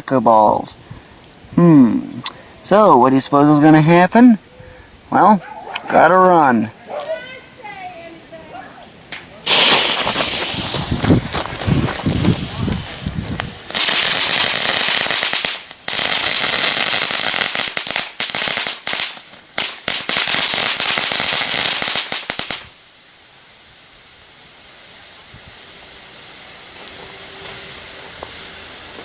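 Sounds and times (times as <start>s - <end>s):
smoke balls hissing: 0.0s - 29.0s
cracker balls crackling: 9.1s - 22.7s.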